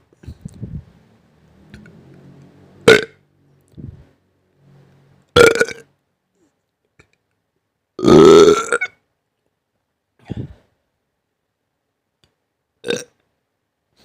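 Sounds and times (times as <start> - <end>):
person burping: 2.8 - 3.2, 5.4 - 5.9, 8.0 - 9.0, 12.8 - 13.2.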